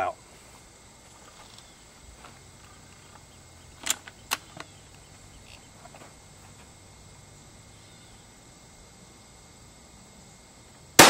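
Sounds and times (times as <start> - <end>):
sharp clicks: 3.8 - 4.7.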